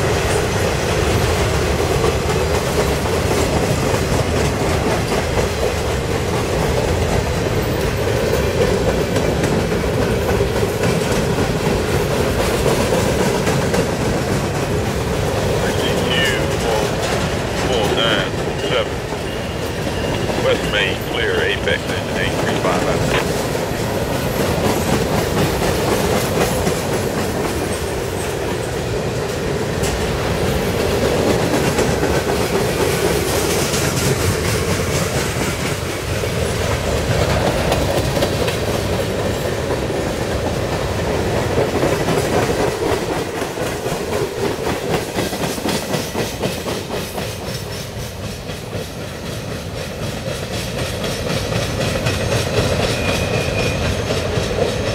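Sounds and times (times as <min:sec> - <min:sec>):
freight train wheels rumbling: 0:00.0 - 0:54.9.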